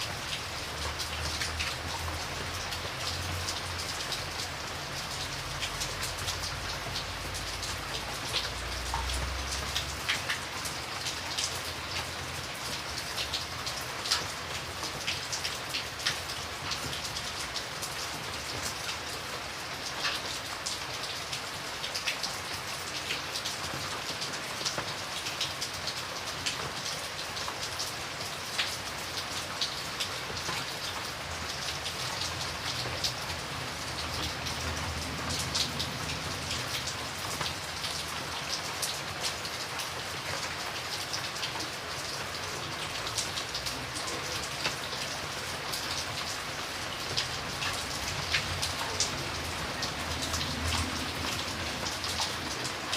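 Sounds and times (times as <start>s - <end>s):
raindrops ticking on a surface: 0.0s - 52.9s
rain hissing: 28.8s - 52.9s.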